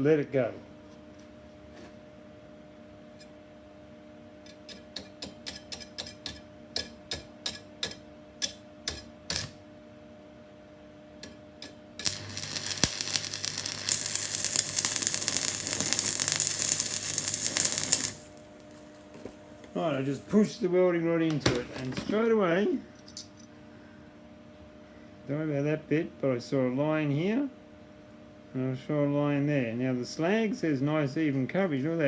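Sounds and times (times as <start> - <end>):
welding rod crackling sizzle: 12.0 - 20.1.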